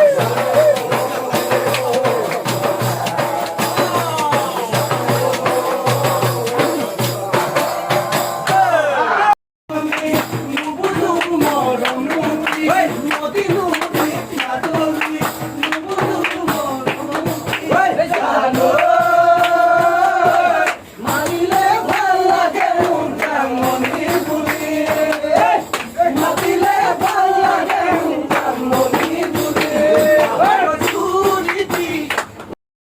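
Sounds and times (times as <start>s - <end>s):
person singing: 0.0s - 8.9s
steady percussion beat: 0.0s - 8.9s, 9.7s - 32.4s.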